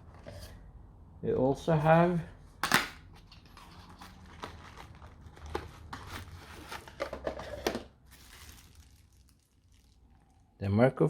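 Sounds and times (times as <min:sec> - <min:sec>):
packaging rustling: 0:03.2 - 0:10.3.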